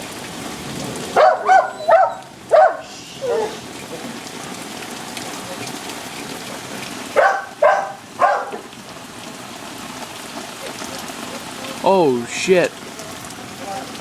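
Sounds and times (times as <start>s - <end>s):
steady rain: 0.0s - 14.0s
dog barking: 1.2s - 3.6s, 7.2s - 8.6s.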